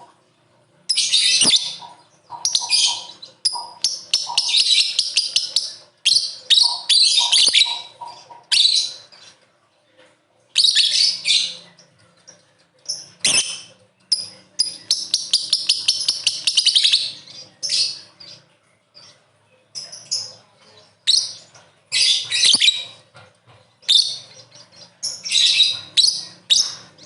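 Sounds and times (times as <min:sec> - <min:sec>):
lovebird chattering: 0:00.9 - 0:09.4, 0:12.8 - 0:18.4, 0:21.0 - 0:23.1, 0:23.8 - 0:27.0.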